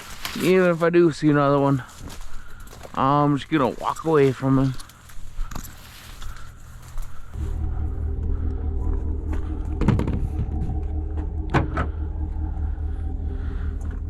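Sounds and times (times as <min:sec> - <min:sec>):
truck engine idling: 0:06.4 - 0:14.0.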